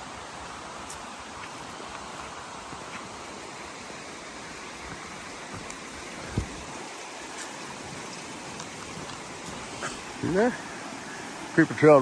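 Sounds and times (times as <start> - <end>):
creek running over rocks: 0.0 - 12.0
dull thump: 4.9 - 8.1.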